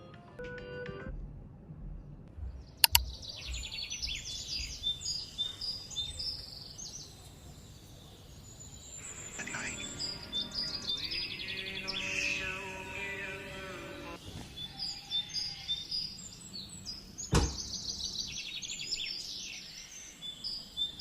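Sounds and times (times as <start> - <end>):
birds chirping: 2.4 - 21.0
sharp clicks: 2.8 - 3.1.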